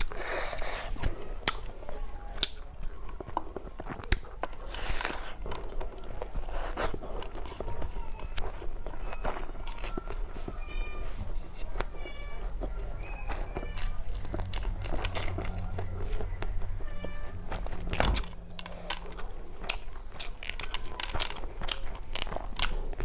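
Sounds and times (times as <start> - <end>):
person chewing food: 0.0 - 23.0.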